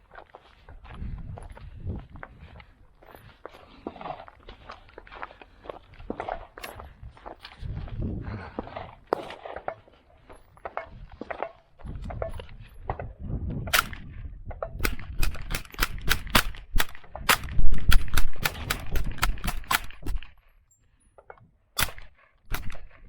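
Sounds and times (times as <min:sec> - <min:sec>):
rifle shots: 0:13.7 - 0:14.0, 0:14.8 - 0:20.4, 0:21.8 - 0:22.9.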